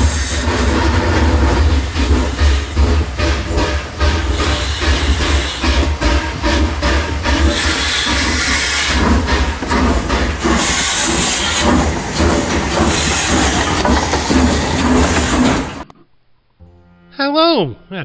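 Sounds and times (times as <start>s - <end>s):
train hiss: 0.0s - 15.8s
rhythmic train clatter: 0.0s - 15.9s
train rumbling: 0.0s - 15.9s.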